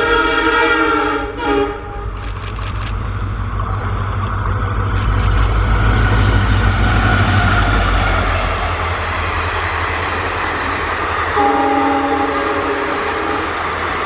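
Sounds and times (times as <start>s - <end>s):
locomotive air horn: 0.0s - 2.2s, 11.3s - 13.6s
train rumble: 0.0s - 14.0s
diesel engine drone: 1.2s - 14.0s.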